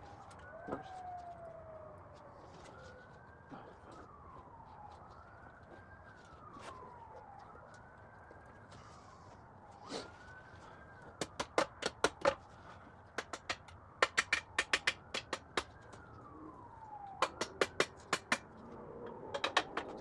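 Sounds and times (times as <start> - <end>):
distant siren: 0.0 - 20.0
sharp metallic taps: 13.2 - 15.7, 19.3 - 20.0.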